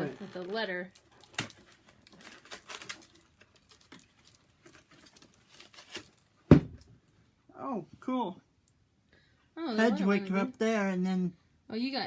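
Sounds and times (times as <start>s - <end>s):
packaging rustling: 0.0s - 6.4s
sharp loud knock: 6.5s - 6.8s.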